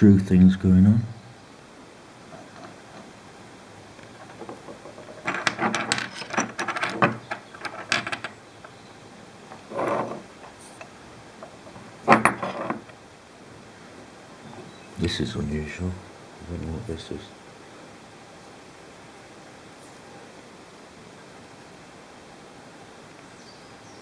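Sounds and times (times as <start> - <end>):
metal fragments clinking: 2.3 - 3.2, 4.0 - 8.8, 9.5 - 13.0
metal scrape: 9.5 - 10.9.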